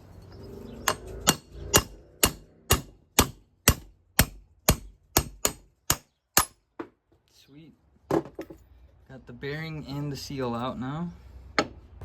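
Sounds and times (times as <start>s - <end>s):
hammer striking metal: 0.8s - 6.6s.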